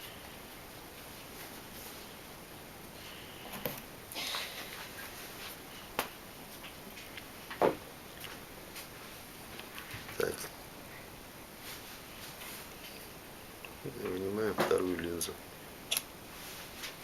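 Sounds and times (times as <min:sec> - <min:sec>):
soft rustle: 0:00.9 - 0:02.3, 0:04.4 - 0:07.3, 0:08.1 - 0:13.2, 0:16.3 - 0:17.0.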